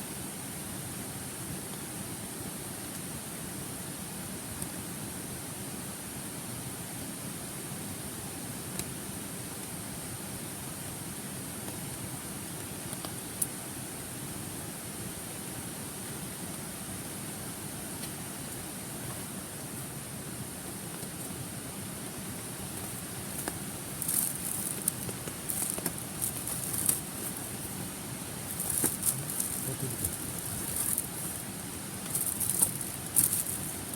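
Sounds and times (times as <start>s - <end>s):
crackling and rustling: 22.3s - 33.9s
campfire popping: 22.4s - 33.9s.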